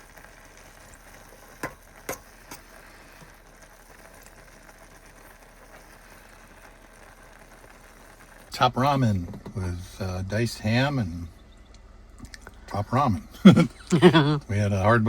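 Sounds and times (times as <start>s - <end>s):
food sizzling in a pot: 0.0s - 11.0s.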